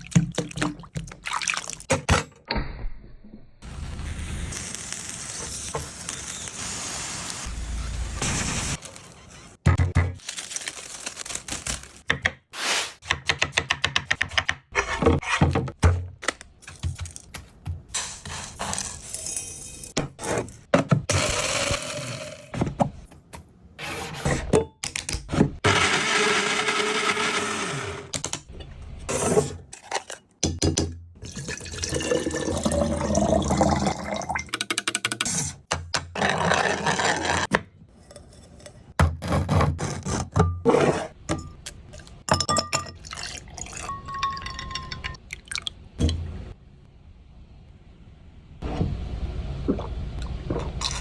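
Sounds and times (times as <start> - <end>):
liquid splashing or pouring: 0.0 - 1.9, 31.2 - 34.4, 42.9 - 45.8
blender whirring: 25.6 - 28.1.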